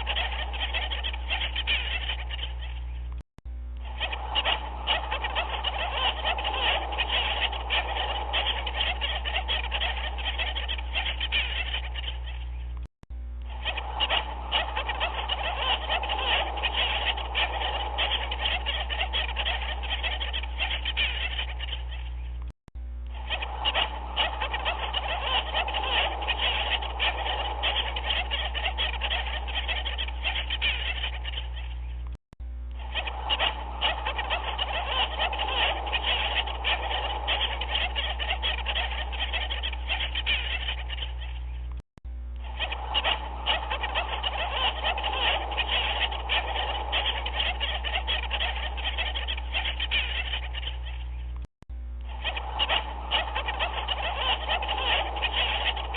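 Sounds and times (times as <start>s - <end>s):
chorus of animals calling: 0.0s - 3.1s, 3.8s - 12.8s, 13.5s - 22.5s, 23.1s - 32.1s, 32.8s - 41.8s, 42.4s - 51.4s, 52.0s - 55.9s
steady low hum: 0.0s - 55.9s.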